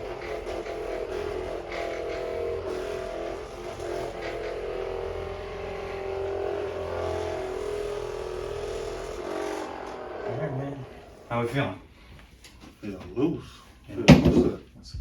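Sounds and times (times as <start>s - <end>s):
massager motor buzz: 0.0s - 11.9s.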